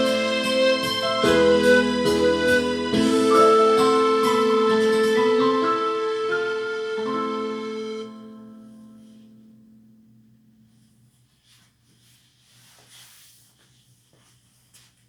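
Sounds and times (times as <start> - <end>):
held music note: 0.0 - 10.1
faint short rustles: 10.8 - 15.0.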